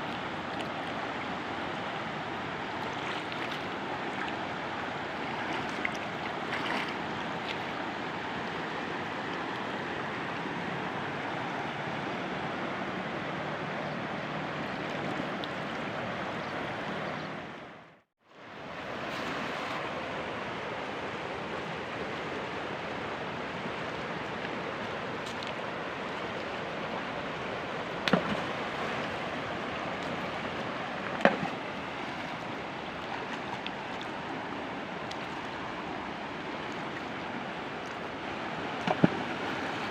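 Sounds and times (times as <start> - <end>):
flowing river water: 0.0 - 39.9.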